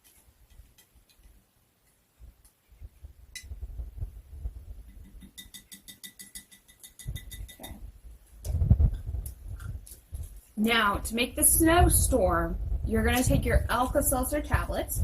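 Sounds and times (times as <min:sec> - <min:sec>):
spoon clinking against glass jar: 0:05.0 - 0:07.8.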